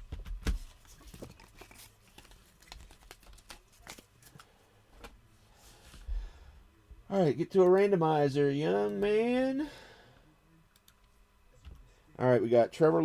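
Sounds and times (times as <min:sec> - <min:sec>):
cards clicking and rustling: 0:00.0 - 0:05.2.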